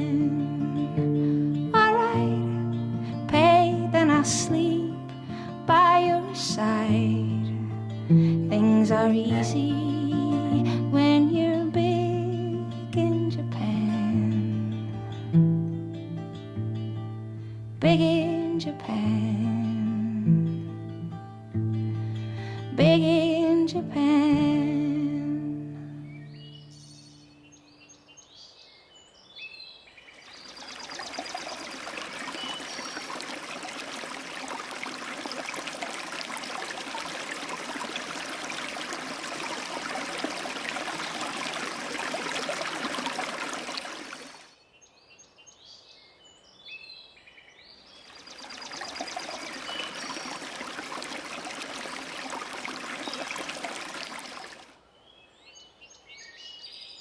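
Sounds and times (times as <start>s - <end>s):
birds chirping: 26.0s - 57.0s
rushing water: 30.2s - 44.5s, 47.9s - 54.8s.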